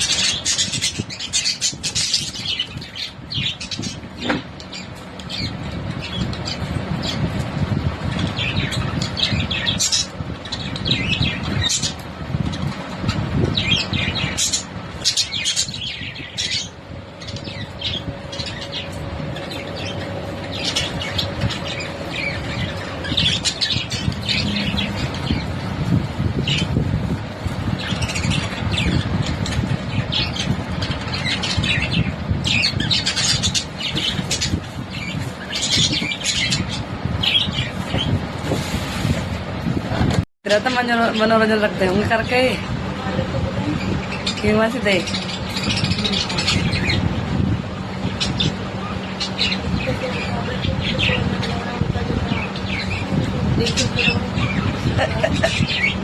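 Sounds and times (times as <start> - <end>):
parrots squawking and chirping: 0.0 - 39.3, 43.7 - 56.0
low rumble: 0.2 - 40.2.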